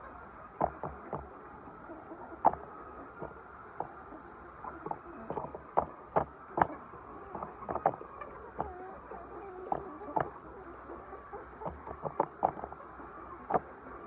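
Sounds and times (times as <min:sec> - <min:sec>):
sharp taps and clicks: 0:00.6 - 0:01.3, 0:11.6 - 0:12.7.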